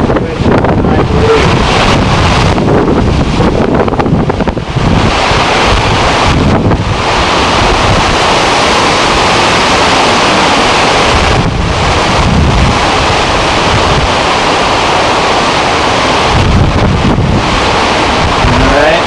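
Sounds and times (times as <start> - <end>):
loud steady rushing noise: 0.0 - 19.0.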